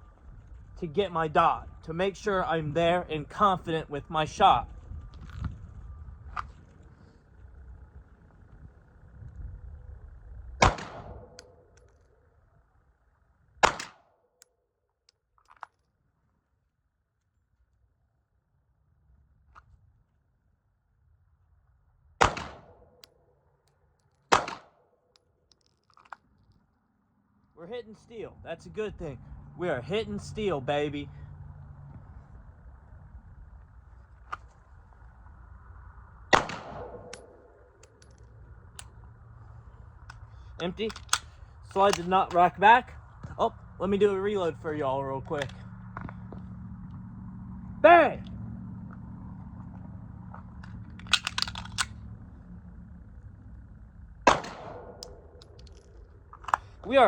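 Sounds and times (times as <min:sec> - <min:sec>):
pistol shots: 0:10.6 - 0:11.6, 0:13.6 - 0:14.1, 0:22.2 - 0:22.8, 0:24.3 - 0:24.8, 0:36.3 - 0:37.4, 0:54.2 - 0:55.4.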